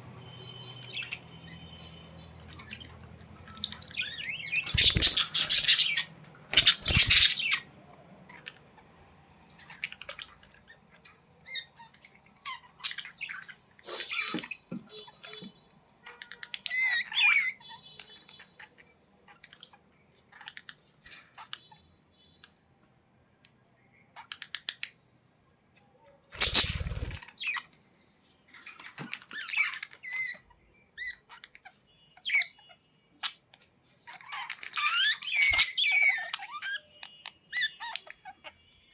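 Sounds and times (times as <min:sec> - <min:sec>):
budgerigars chirping and warbling: 0:00.7 - 0:15.4, 0:16.0 - 0:21.8, 0:26.3 - 0:27.8, 0:28.6 - 0:38.8.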